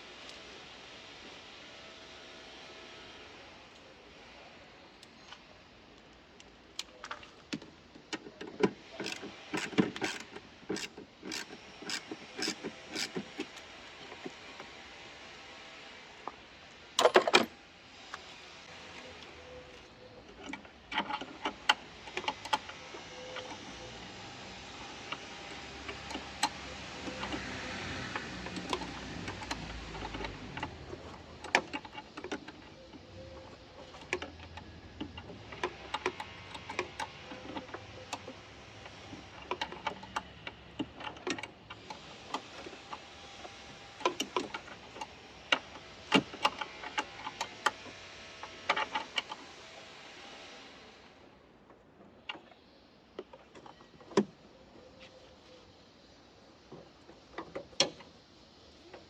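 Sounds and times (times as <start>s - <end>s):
tools clicking and tapping: 7.6s - 14.4s.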